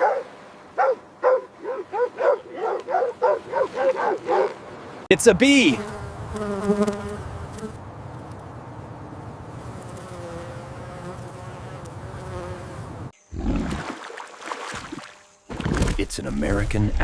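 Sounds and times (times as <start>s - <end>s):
bees buzzing: 3.3s - 7.8s, 8.6s - 15.9s.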